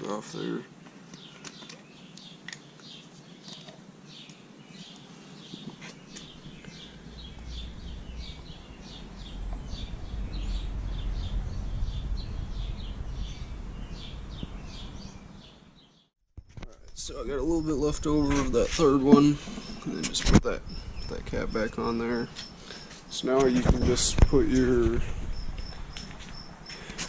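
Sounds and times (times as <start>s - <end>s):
small birds chirping: 0.0s - 16.1s, 17.0s - 27.0s
low rumble: 6.2s - 15.8s.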